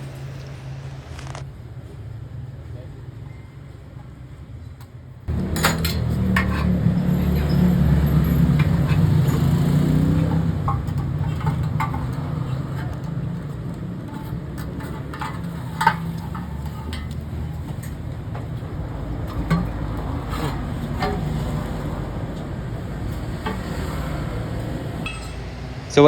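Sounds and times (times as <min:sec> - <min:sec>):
sharp clicks and knocks: 0:00.0 - 0:01.4
vehicle engine rumbling: 0:00.0 - 0:01.7, 0:05.3 - 0:26.0.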